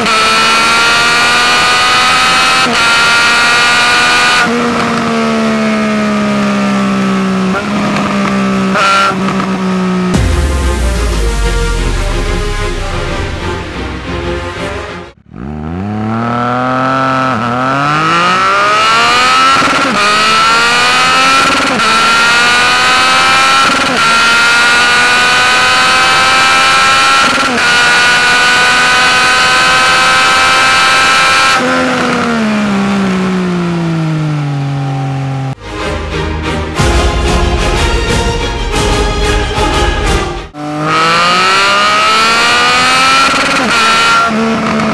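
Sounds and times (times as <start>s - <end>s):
motorcycle accelerating through gears: 0.0s - 10.2s, 15.2s - 35.6s, 40.6s - 44.9s.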